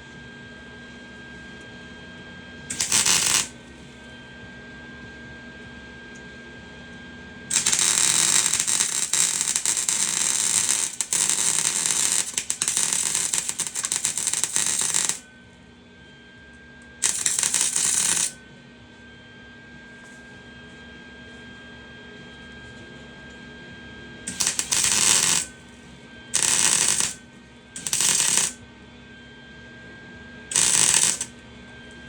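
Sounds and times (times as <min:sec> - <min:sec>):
welding arc crackling: 0:02.7 - 0:03.6, 0:07.5 - 0:15.2, 0:17.0 - 0:18.4, 0:24.3 - 0:25.6, 0:26.4 - 0:27.2, 0:27.8 - 0:28.6, 0:30.5 - 0:31.3.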